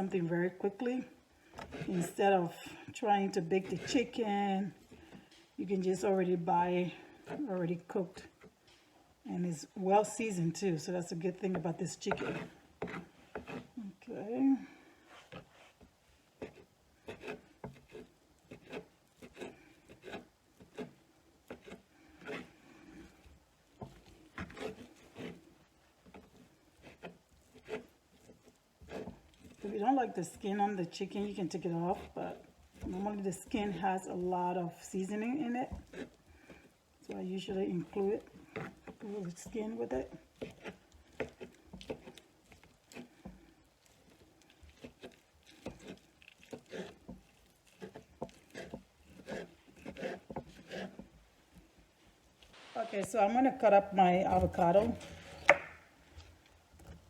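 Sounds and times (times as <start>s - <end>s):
knife cutting on cutting board: 12.0s - 13.7s, 16.4s - 22.5s, 23.8s - 25.4s, 44.7s - 51.1s, 54.3s - 55.8s
knife tapping on cutting board: 55.5s - 55.8s.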